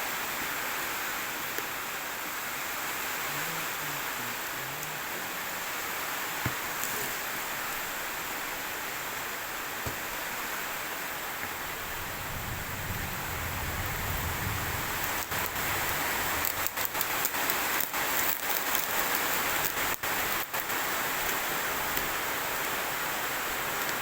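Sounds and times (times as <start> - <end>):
steady hiss: 0.0 - 24.0
low rumble: 11.8 - 16.8.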